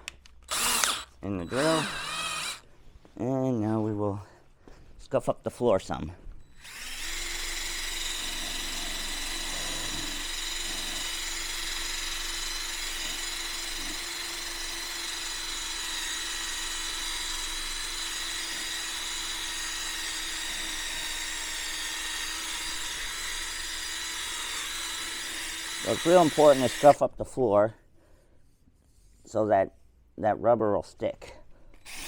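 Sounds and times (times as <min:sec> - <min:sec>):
electric drill motor whine: 0:00.5 - 0:02.6, 0:06.4 - 0:27.0.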